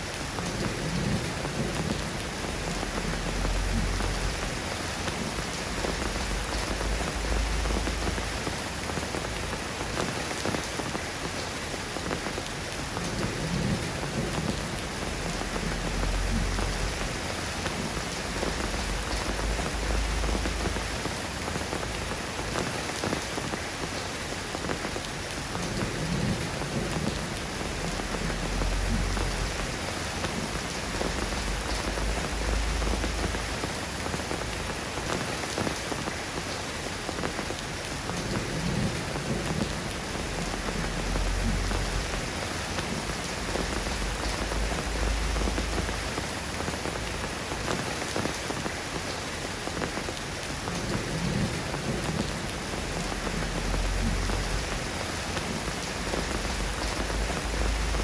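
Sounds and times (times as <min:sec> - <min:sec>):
steady rain falling: 0:00.0 - 0:58.0
low rumble: 0:27.7 - 0:33.6.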